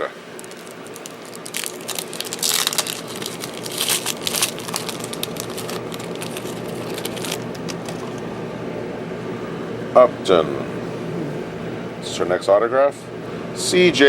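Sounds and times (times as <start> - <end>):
card packs crinkling: 0.0 - 8.3
steady low hum: 0.0 - 14.0.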